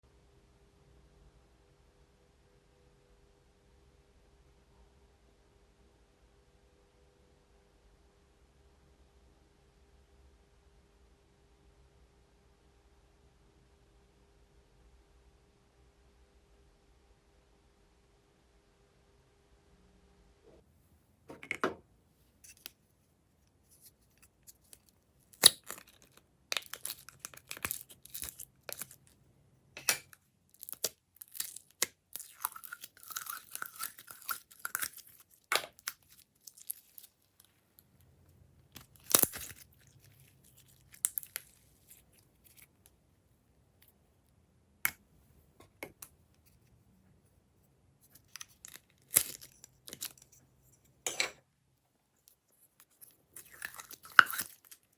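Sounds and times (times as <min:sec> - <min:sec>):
continuous crackling of slime: 0:22.5 - 0:45.0, 0:47.9 - 0:51.0, 0:52.1 - 0:54.9
slime squishing with sticky pops: 0:29.8 - 0:37.2.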